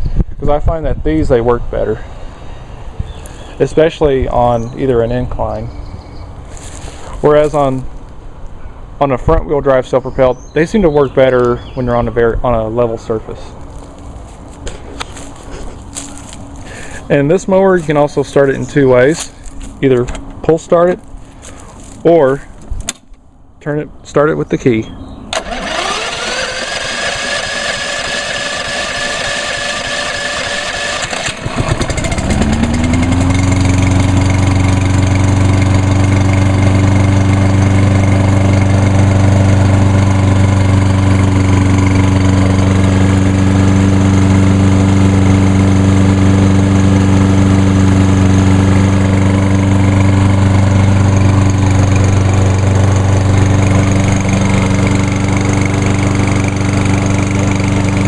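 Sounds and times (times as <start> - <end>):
mower engine running: 13.5 - 20.4, 25.3 - 58.0
electric starter whining: 25.3 - 58.0.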